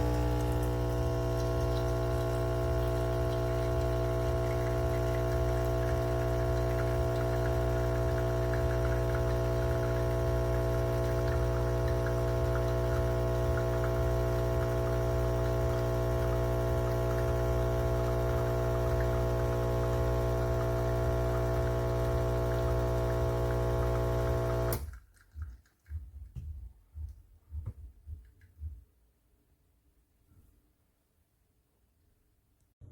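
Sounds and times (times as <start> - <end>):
faint trickle of liquid: 0.0 - 23.4
espresso machine pump humming: 0.0 - 24.8.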